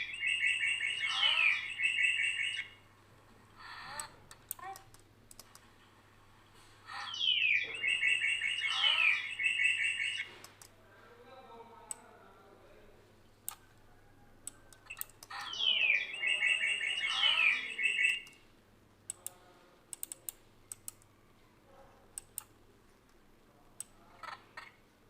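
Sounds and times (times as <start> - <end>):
bird call sound effect: 0.0 - 2.8, 7.0 - 10.3
computer mouse clicks: 3.9 - 5.8, 10.3 - 10.7, 13.4 - 13.8, 14.4 - 15.5, 19.1 - 21.1, 22.2 - 23.2.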